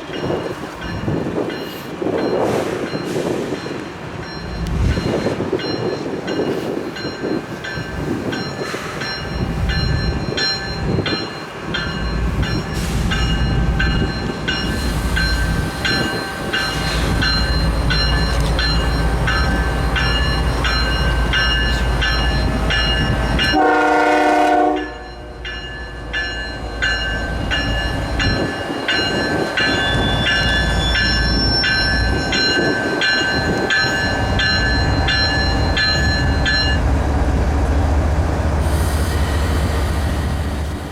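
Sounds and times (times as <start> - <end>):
high ringing: 3.7 - 36.8
train horn blast: 23.4 - 25.3.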